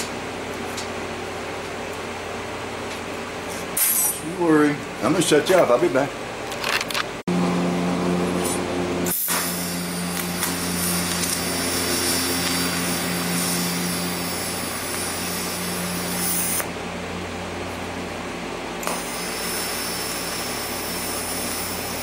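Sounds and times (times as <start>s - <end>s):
electric motor hum: 7.3s - 18.2s.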